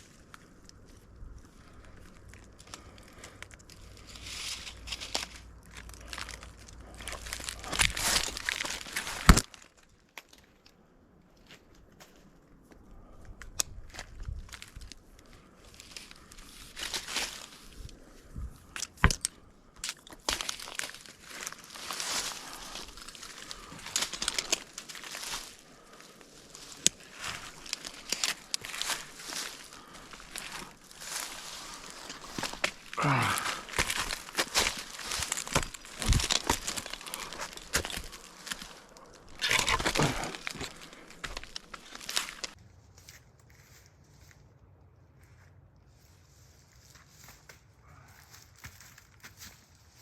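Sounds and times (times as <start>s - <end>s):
climbing spurs crunching into bark: 0.0s - 10.8s, 13.0s - 43.2s
gear scraping on tree trunk: 3.7s - 9.5s, 20.0s - 42.6s
climbing spurs biting into bark: 22.4s - 25.2s, 26.6s - 42.5s.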